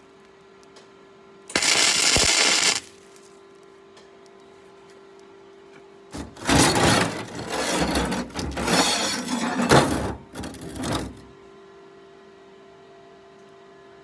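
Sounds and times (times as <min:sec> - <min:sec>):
welding arc crackling on steel: 0:01.5 - 0:03.3.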